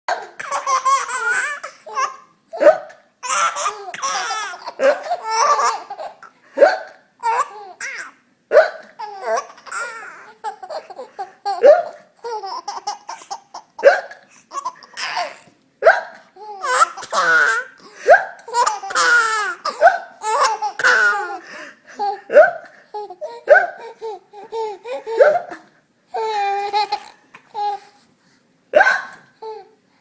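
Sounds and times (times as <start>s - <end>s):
baby laughing: 0.1s - 15.6s, 16.3s - 28.0s
fake hiccup sounds: 8.5s - 9.0s, 13.8s - 14.2s, 15.8s - 16.2s, 22.3s - 22.7s, 28.8s - 29.3s.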